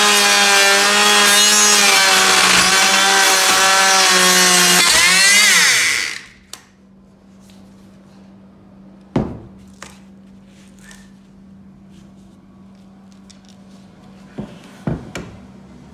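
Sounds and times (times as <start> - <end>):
power saw cutting wood: 0.0 - 6.4.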